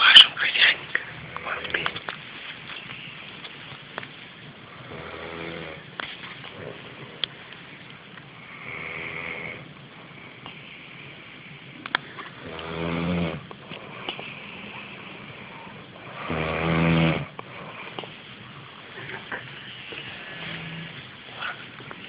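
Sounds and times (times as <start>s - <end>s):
man snoring heavily: 4.9s - 5.8s, 12.4s - 13.4s, 16.1s - 17.3s.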